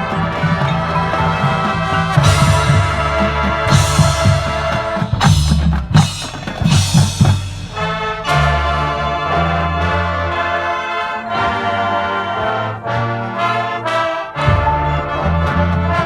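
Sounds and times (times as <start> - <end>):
marching band playing: 0.0 - 16.0
loud drum hits: 2.1 - 8.9.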